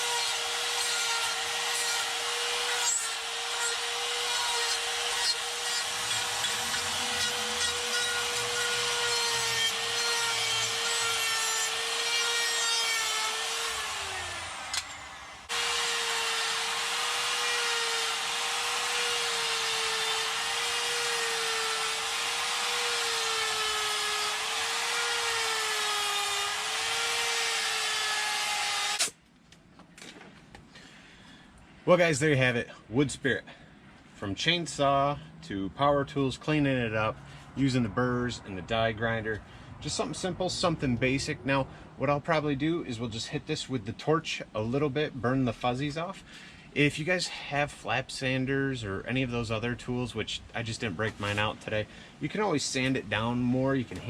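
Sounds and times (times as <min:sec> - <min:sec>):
electric die grinder whining: 0:00.0 - 0:29.1.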